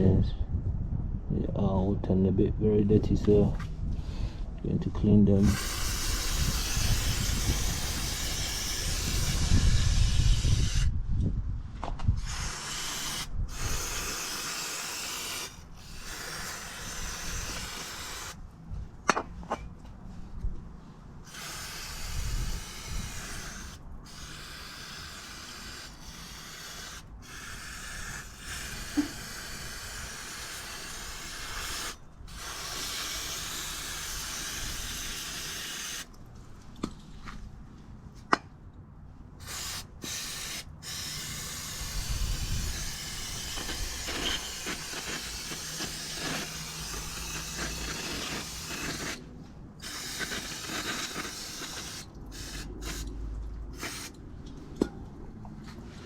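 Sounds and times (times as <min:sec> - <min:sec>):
aerosol spray hissing: 0:05.4 - 0:10.9, 0:12.2 - 0:18.4, 0:21.3 - 0:36.1, 0:39.4 - 0:49.2, 0:49.8 - 0:53.1, 0:53.8 - 0:54.2.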